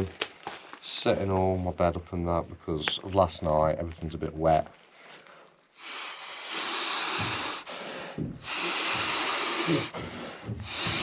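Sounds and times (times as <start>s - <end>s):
fabric rustling: 0.0s - 5.4s.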